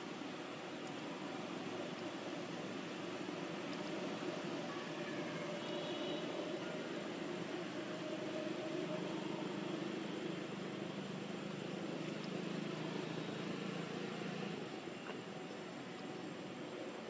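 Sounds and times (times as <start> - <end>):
background hiss: 0.0 - 17.0
steady engine hum: 0.0 - 17.0.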